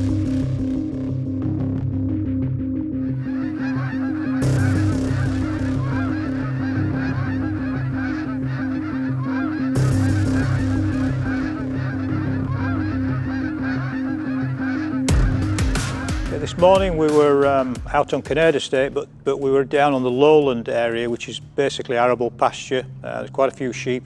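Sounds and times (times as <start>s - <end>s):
music with drone and pulsing bass: 0.0s - 18.6s
geese honking: 2.8s - 24.0s.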